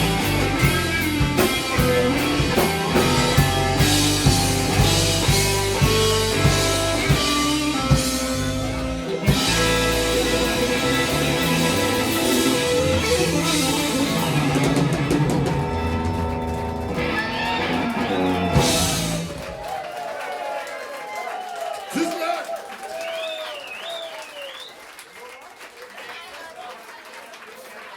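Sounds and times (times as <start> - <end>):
long held guitar chords: 0.0 - 19.5
drum strokes: 0.0 - 19.6
rock band playing a ballad: 0.0 - 19.6.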